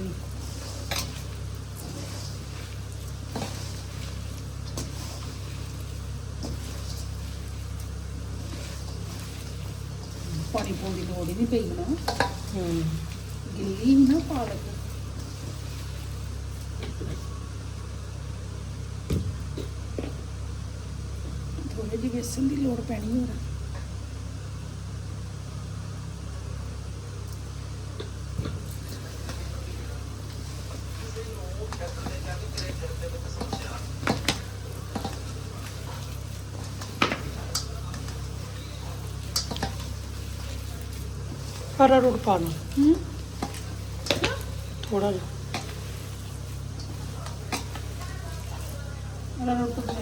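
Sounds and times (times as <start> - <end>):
soft knocks and rustles in bowl: 0.0 - 17.4, 28.0 - 50.0
steady low hum: 0.0 - 50.0.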